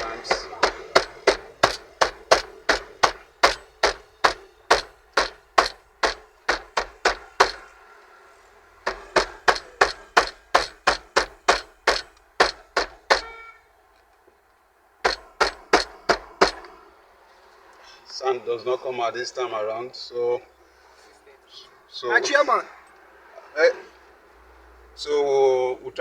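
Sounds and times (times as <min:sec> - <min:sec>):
knocks on car stereo unit: 0:00.0 - 0:07.7, 0:08.9 - 0:13.4, 0:15.0 - 0:16.7.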